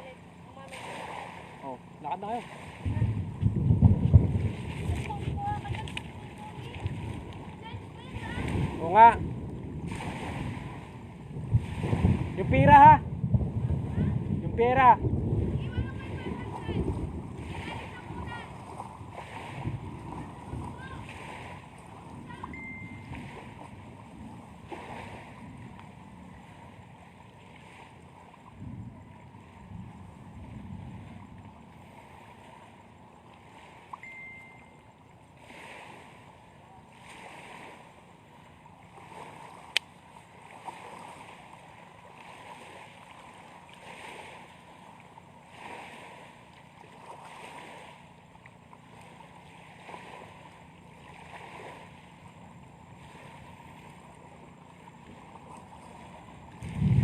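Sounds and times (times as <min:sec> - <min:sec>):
lake waves washing against shore: 0:00.0 - 0:57.0
wind on microphone: 0:02.6 - 0:32.7, 0:55.1 - 0:57.0.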